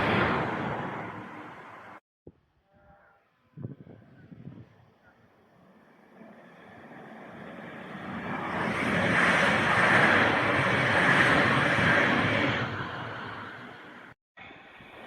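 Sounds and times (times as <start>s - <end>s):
train passing: 0.0s - 2.0s, 5.4s - 15.0s.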